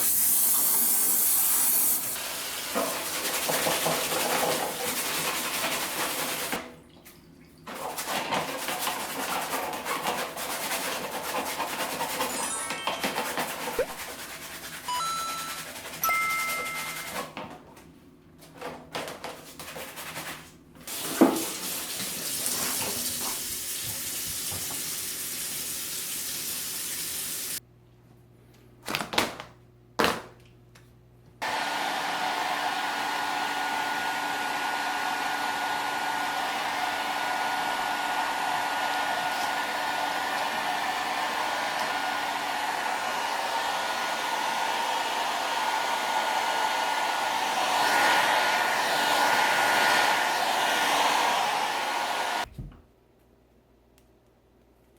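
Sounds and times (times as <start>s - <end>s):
electric blower running: 31.4s - 52.5s.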